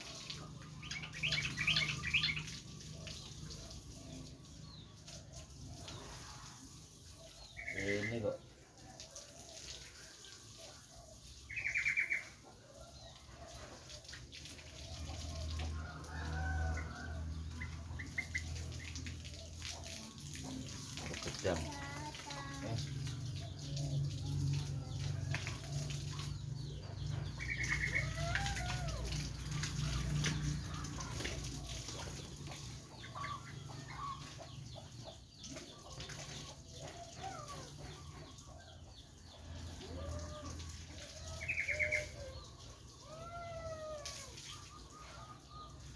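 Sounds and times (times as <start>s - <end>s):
birds calling: 0.0s - 45.9s
rooster crowing: 15.4s - 17.7s.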